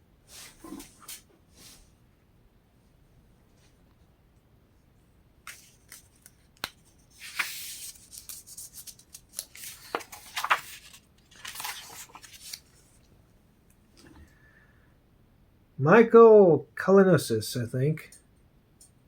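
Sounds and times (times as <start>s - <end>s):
book pages turning: 5.4s - 13.1s.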